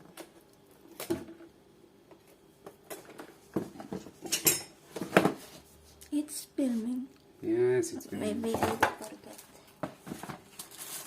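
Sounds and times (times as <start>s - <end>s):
objects and packaging handled: 8.4s - 11.0s.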